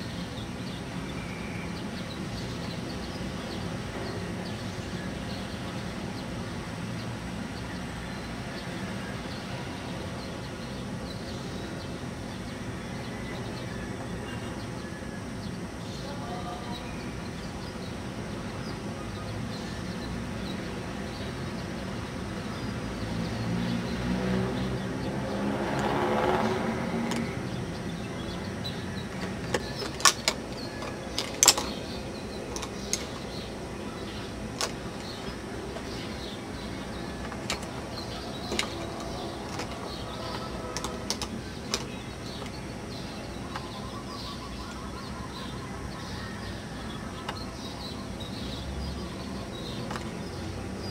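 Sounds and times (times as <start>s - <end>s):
steady background noise: 0.0s - 50.9s
vehicle passing and accelerating: 22.4s - 29.8s, 31.1s - 41.9s.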